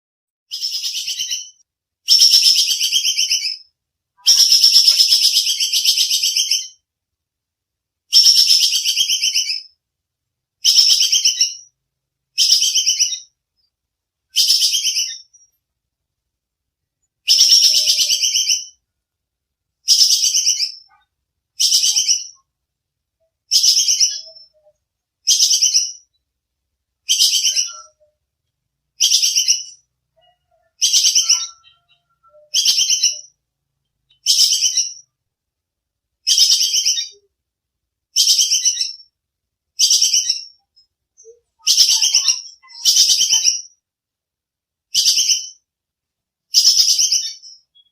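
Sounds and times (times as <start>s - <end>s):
squirrel chattering call: 4.2s - 6.7s, 17.3s - 18.8s, 29.0s - 33.4s, 41.2s - 43.7s.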